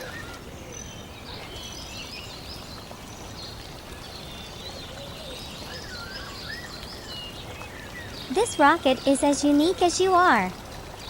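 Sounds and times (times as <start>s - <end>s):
small birds chirping: 0.0s - 11.0s.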